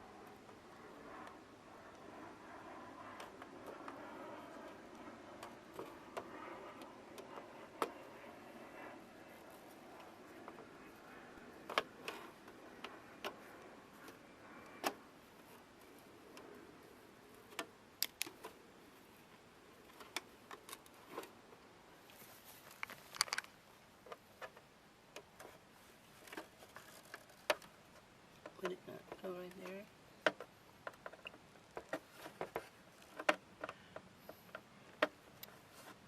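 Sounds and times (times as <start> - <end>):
rattling clicks: 22.7 - 23.6.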